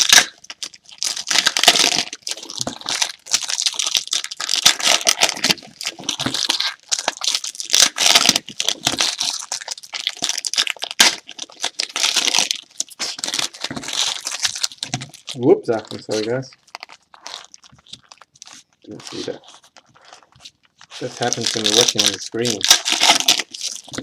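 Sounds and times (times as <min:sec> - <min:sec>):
plastic wrapping crinkling and tearing: 0:00.0 - 0:24.0.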